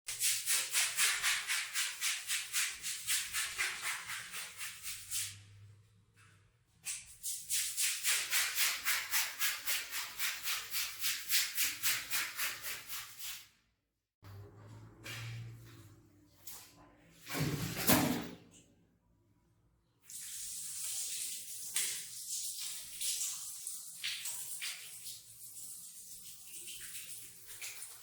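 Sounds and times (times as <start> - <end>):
brush scrubbing a rug: 0.1 - 5.4.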